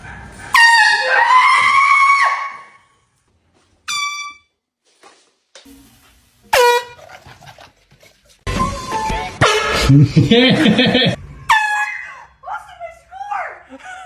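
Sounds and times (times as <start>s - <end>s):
air horn blasts: 6.5s - 7.0s, 9.4s - 9.9s.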